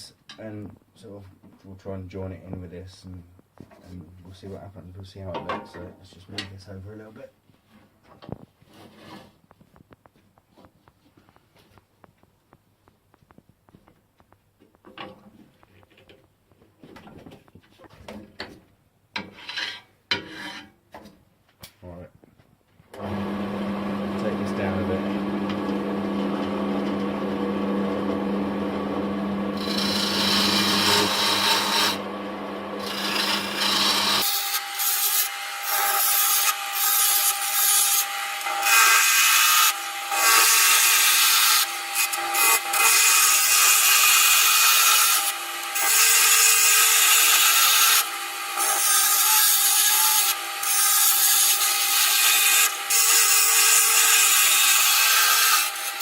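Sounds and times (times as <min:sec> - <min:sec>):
lathe motor hum: 0:23.0 - 0:34.4
gouge scraping spinning wood: 0:29.4 - 0:49.2.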